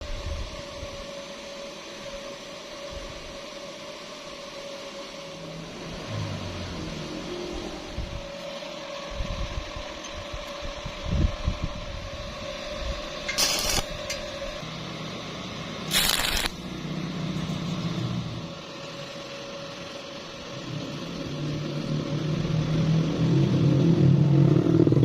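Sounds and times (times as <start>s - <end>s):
steady hum: 0.0s - 24.3s
welding arc crackle: 13.3s - 14.5s, 15.9s - 16.8s.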